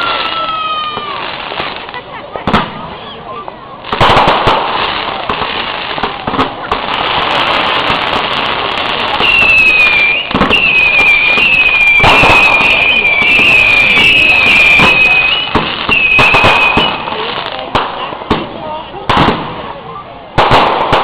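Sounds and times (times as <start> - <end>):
fireworks bangs and crackles: 0.0 - 21.0
firework whistle: 6.9 - 17.3.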